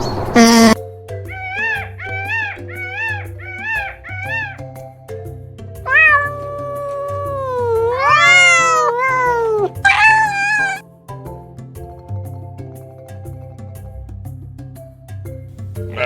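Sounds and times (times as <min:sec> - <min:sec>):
background music: 0:00.5 - 0:16.0
cat meowing: 0:01.4 - 0:04.6, 0:05.9 - 0:10.8.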